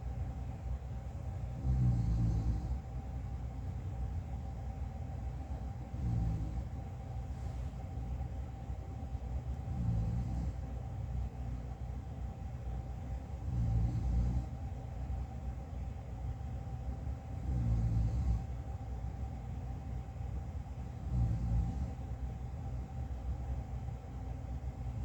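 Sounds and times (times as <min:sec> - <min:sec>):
person snoring: 0:01.6 - 0:02.8.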